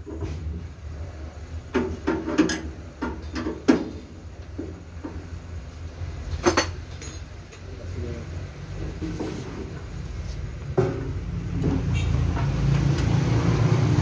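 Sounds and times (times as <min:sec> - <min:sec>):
metallic clanks and knocks: 0:06.4 - 0:07.7.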